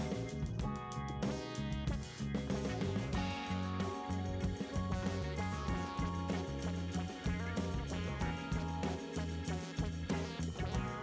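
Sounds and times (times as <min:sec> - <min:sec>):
guitar and drums instrumental: 0:00.0 - 0:11.0.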